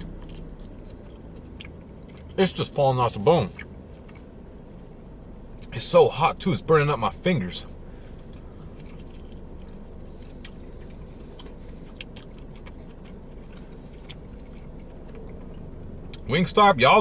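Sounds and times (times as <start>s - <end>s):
quiet chewing: 0.0s - 2.4s, 7.9s - 16.3s
low background rumble: 0.0s - 17.0s.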